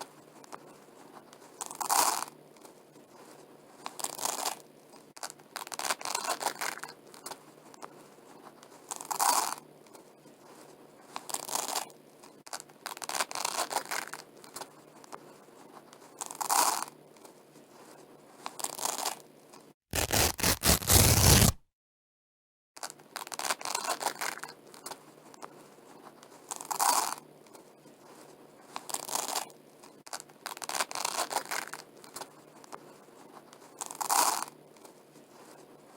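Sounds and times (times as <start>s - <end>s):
velcro strips ripping apart: 19.9s - 21.6s.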